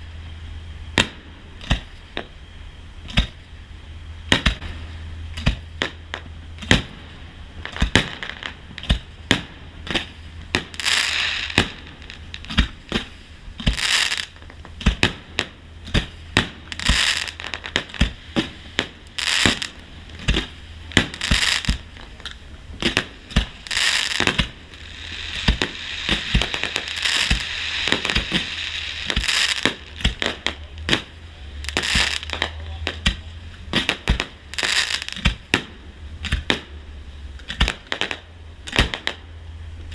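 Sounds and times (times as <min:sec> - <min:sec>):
fireworks bangs: 0:00.8 - 0:03.6, 0:04.2 - 0:36.8, 0:37.4 - 0:39.3
crackling hissing shell bursts: 0:07.7 - 0:14.5, 0:15.9 - 0:22.1, 0:22.9 - 0:32.5.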